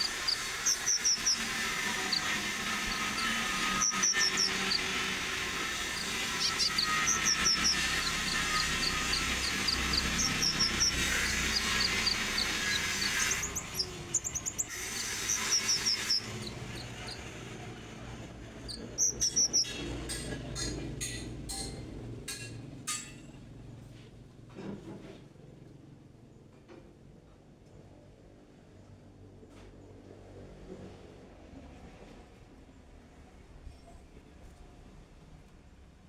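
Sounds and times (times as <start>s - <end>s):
sharp clicks: 0.0s - 17.3s
bird chirping: 0.0s - 20.0s.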